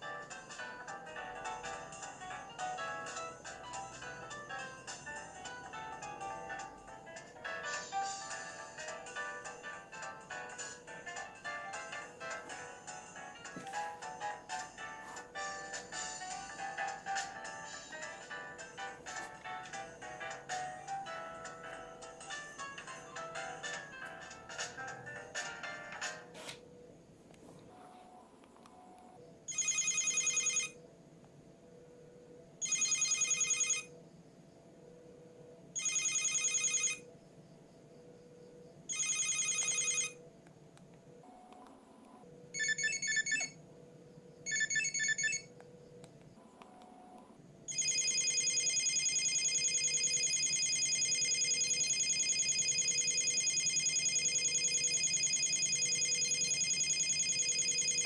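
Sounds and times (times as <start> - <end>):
electronic phone ringtone: 0.0 - 26.1, 27.9 - 30.8, 32.6 - 34.0, 35.8 - 37.1, 38.9 - 40.2, 41.2 - 43.6, 44.4 - 45.5, 46.9 - 58.0.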